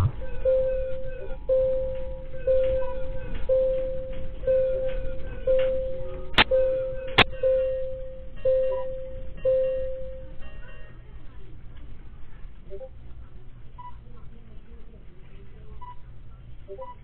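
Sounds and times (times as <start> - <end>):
alarm beeping: 0.0 - 10.4.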